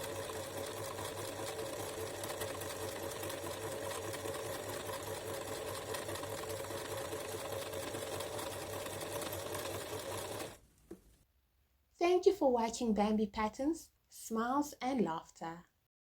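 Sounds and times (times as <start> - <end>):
sewing machine running: 0.0 - 10.6.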